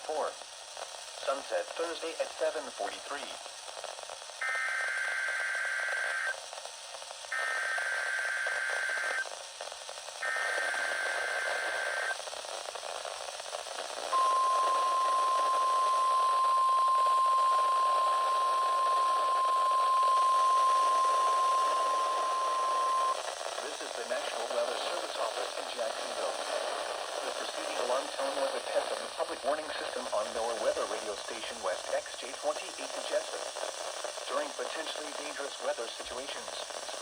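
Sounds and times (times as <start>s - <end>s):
radio hiss: 0.0s - 37.0s
steady warning alarm tone: 10.2s - 12.2s, 14.1s - 23.2s
warbling digital data bursts: 14.2s - 24.2s.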